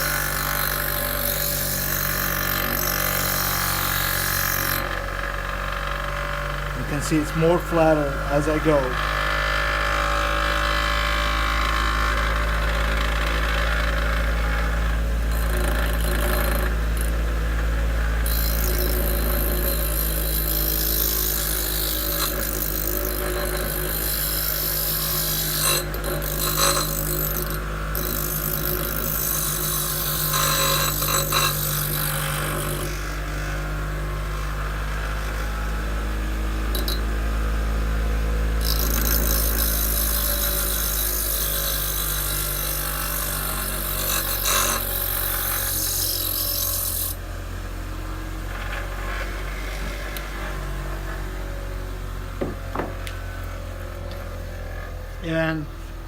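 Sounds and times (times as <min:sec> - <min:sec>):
bench grinder motor hum: 0:00.0 - 0:56.0
gritty hissing grinding: 0:06.7 - 0:09.0.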